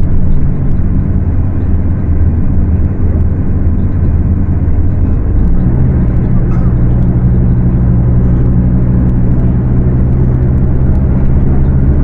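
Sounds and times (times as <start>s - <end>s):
bus diesel engine running: 0.0s - 12.0s.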